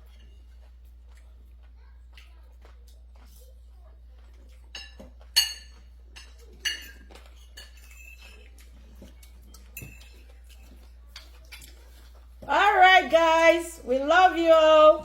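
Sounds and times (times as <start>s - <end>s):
tableware clinking: 4.7s - 11.7s.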